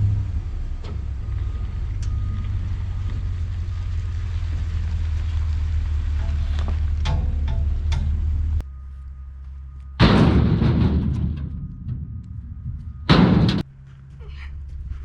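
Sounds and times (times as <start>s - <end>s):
low hum: 0.0s - 15.0s
wood banging into trailer bed: 10.0s - 13.6s.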